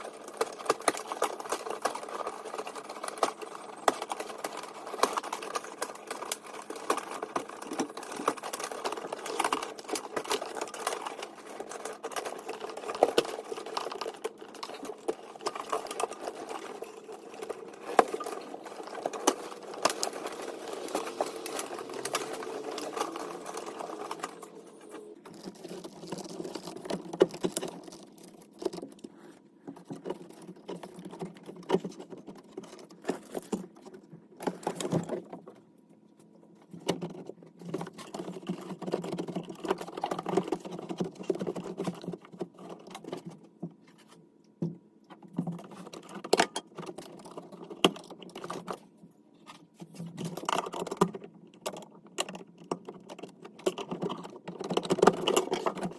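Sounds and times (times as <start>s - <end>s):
rapid clicks and rattles: 0.0s - 55.9s.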